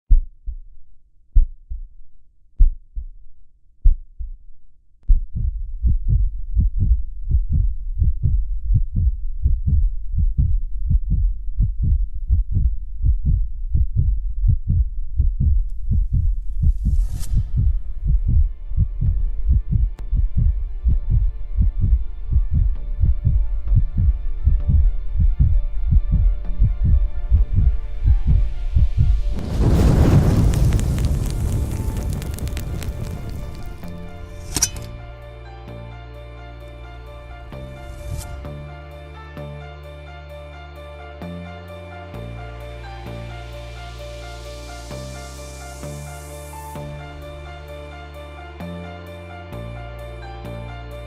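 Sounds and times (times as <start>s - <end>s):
heartbeat-like bass thumps: 0.1s - 34.6s
rising whoosh: 28.0s - 35.1s.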